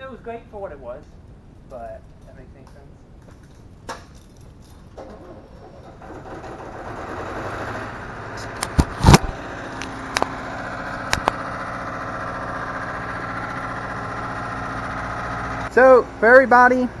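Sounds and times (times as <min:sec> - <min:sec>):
welder engine running: 0:05.0 - 0:17.0
sharp clicks and knocks: 0:08.4 - 0:10.4, 0:11.0 - 0:11.4.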